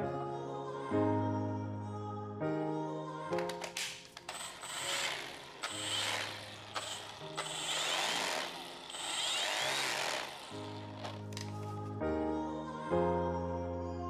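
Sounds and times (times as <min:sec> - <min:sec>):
background music: 0:00.0 - 0:14.0
sharp clicks: 0:03.4 - 0:11.6
rattling scraping mechanical noise: 0:04.1 - 0:11.8.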